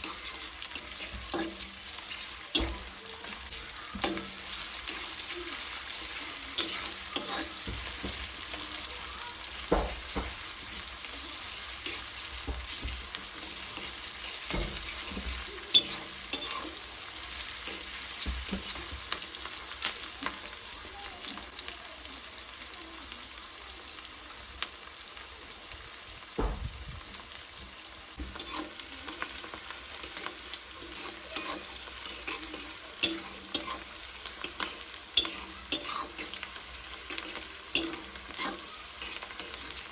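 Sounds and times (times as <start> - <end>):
utensil scraping pan: 0.0 - 8.6, 11.6 - 19.2, 28.2 - 29.3, 29.9 - 39.9
food sizzling in hot oil: 0.0 - 39.9.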